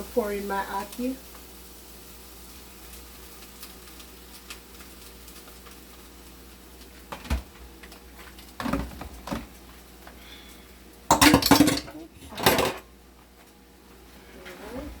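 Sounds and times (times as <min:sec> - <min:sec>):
oil crackling in a frying pan: 0:00.0 - 0:15.0.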